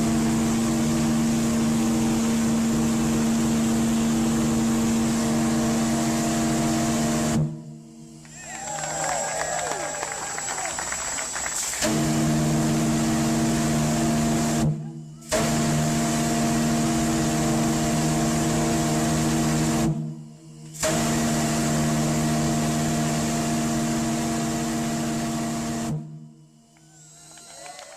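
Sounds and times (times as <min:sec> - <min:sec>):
ship steam whistle blasts: 0:11.6 - 0:20.1, 0:20.8 - 0:26.1.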